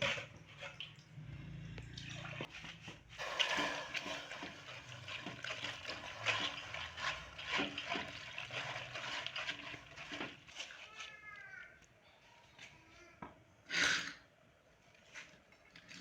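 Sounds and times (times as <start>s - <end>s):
water pouring: 0.0s - 11.1s
wet squelching and sloshing: 0.0s - 11.1s.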